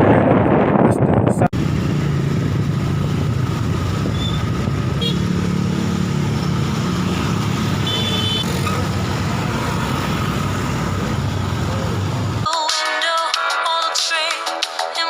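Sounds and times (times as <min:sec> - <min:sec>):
engine running: 0:01.5 - 0:12.5.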